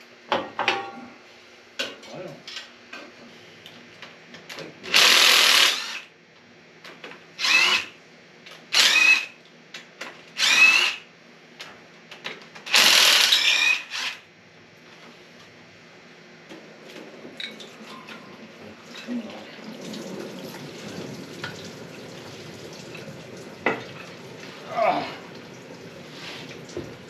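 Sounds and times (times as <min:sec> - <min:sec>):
power tool motor bursts: 0:04.9 - 0:06.1, 0:07.4 - 0:08.0, 0:08.7 - 0:09.4, 0:10.4 - 0:11.0, 0:12.7 - 0:14.2.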